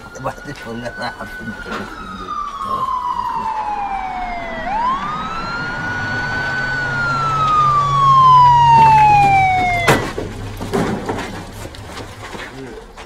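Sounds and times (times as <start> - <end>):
police car siren wailing: 0.0 - 10.6.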